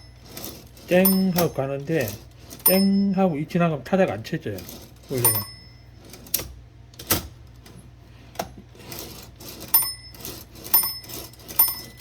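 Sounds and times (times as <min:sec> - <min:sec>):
typewriter bell ding: 0:00.9 - 0:01.7, 0:02.6 - 0:03.2, 0:05.1 - 0:05.9, 0:09.7 - 0:12.0.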